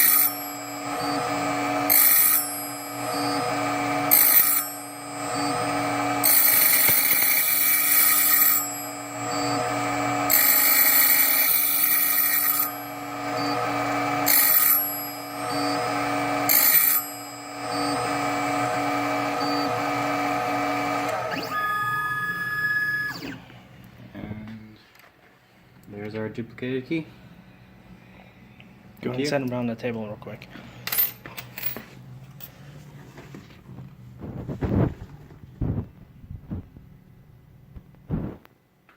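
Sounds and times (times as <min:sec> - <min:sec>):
key cutting wheel cutting: 0:00.0 - 0:23.4
machine motor running: 0:00.0 - 0:23.6
stepped rising machine whine: 0:00.0 - 0:23.6.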